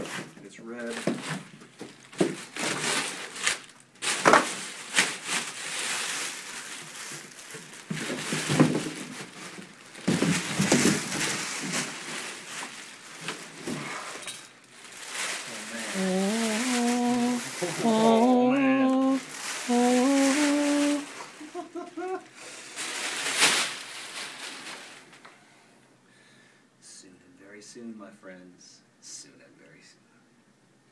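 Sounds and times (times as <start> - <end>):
packaging rustling and crinkling: 0.0 - 25.3
man humming: 15.5 - 22.3.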